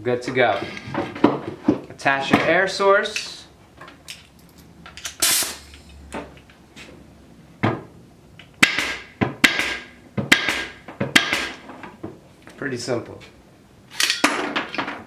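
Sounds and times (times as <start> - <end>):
pneumatic stapler firing: 5.0 - 5.8, 8.6 - 11.6
air hose hiss: 5.2 - 5.9.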